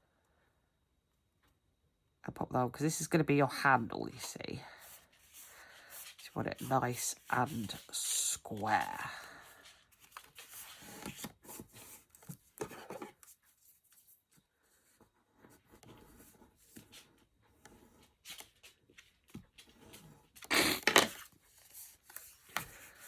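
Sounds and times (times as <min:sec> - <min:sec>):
card rustling and rubbing: 0:04.8 - 0:23.0.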